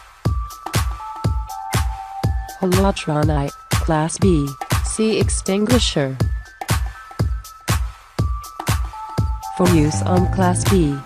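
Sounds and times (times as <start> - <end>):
electronic dance music: 9.6 - 11.0
held synth notes: 9.7 - 11.0.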